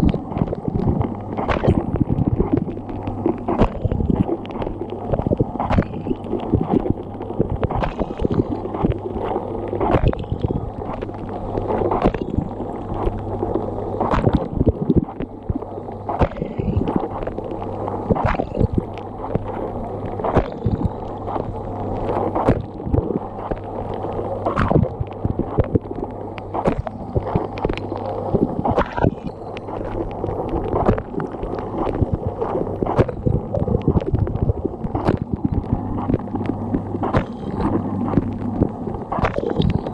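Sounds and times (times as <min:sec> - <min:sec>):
water spraying and splashing: 0:00.0 - 0:39.9
water jets spattering and knocking: 0:24.5 - 0:39.9.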